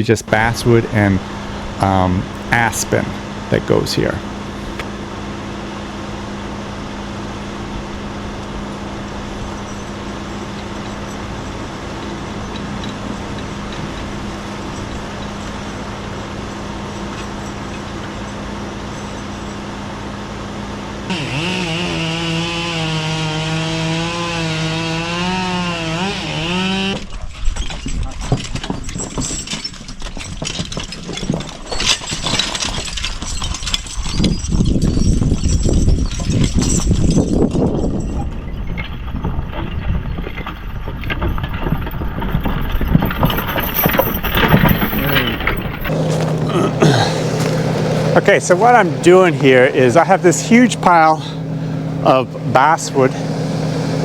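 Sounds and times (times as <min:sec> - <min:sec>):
engine hum: 0:00.0 - 0:27.4, 0:30.2 - 0:54.0
chainsaw cutting wood: 0:21.1 - 0:27.2, 0:41.2 - 0:54.0.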